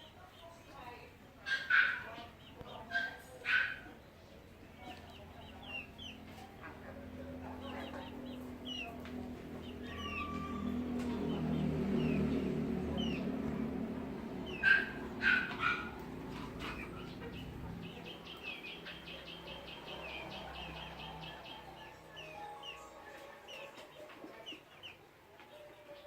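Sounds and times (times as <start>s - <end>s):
loud sharp bird calls: 7.6s - 22.8s.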